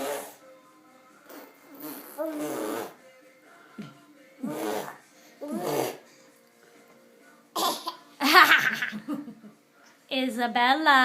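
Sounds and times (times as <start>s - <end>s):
baby giggling: 7.6s - 9.0s.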